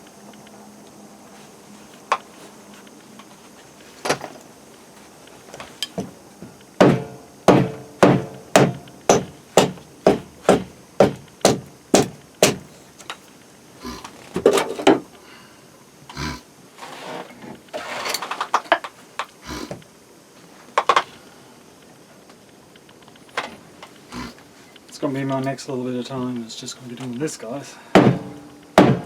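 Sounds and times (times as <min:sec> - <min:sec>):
hard ringing hammer blows: 0:06.8 - 0:12.6, 0:27.9 - 0:29.0
knocks: 0:06.8 - 0:12.7, 0:28.0 - 0:29.0.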